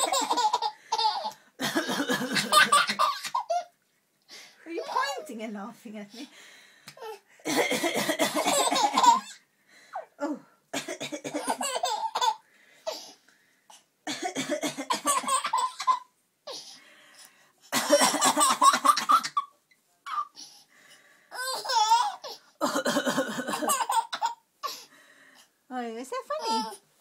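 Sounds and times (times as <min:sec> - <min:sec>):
baby belly laughing: 0:00.0 - 0:03.7, 0:08.4 - 0:09.4, 0:11.4 - 0:12.4, 0:14.9 - 0:16.1, 0:21.4 - 0:22.4, 0:23.5 - 0:24.4
woman coughing: 0:01.6 - 0:03.2, 0:07.4 - 0:09.3, 0:10.8 - 0:12.3, 0:14.1 - 0:15.8, 0:17.7 - 0:19.4, 0:22.6 - 0:24.3.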